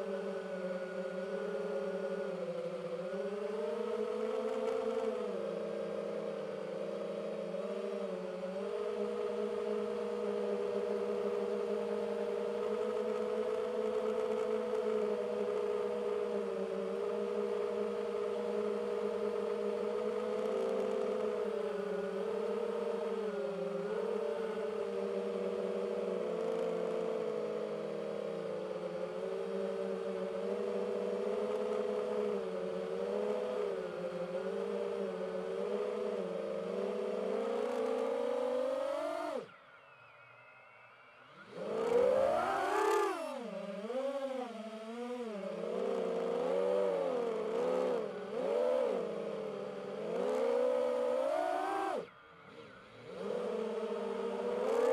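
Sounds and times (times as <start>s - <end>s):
drone propellers whining: 41.4s - 54.9s.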